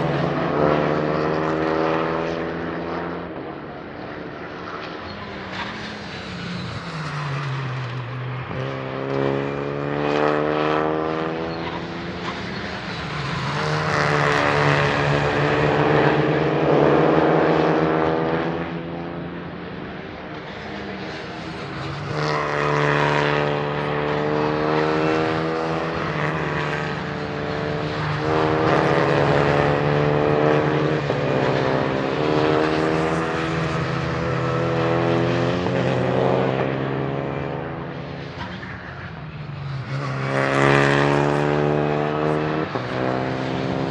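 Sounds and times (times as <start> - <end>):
race cars passing at speed: 0.0 - 43.9.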